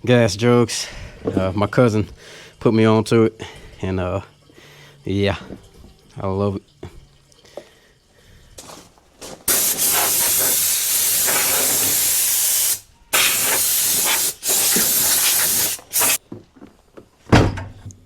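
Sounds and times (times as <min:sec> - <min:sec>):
pressurised spray hissing: 0:09.5 - 0:16.2.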